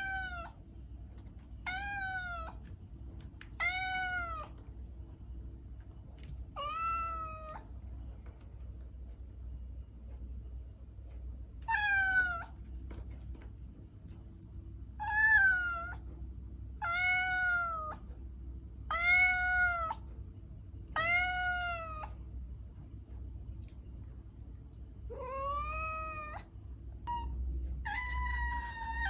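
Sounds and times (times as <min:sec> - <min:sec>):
cat meowing: 0:00.0 - 0:00.6, 0:01.6 - 0:02.6, 0:03.5 - 0:04.6, 0:06.6 - 0:07.7, 0:11.7 - 0:12.6, 0:15.0 - 0:16.0, 0:16.8 - 0:18.0, 0:18.9 - 0:20.0, 0:21.0 - 0:22.2, 0:25.1 - 0:29.0
faint low hum: 0:00.0 - 0:29.0.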